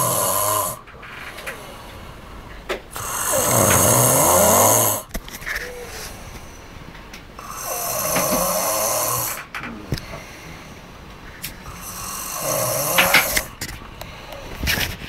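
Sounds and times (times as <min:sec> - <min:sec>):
boy snoring: 0:00.0 - 0:01.8, 0:02.9 - 0:06.2, 0:07.4 - 0:10.3, 0:11.6 - 0:14.7
quiet breathing: 0:00.0 - 0:15.0.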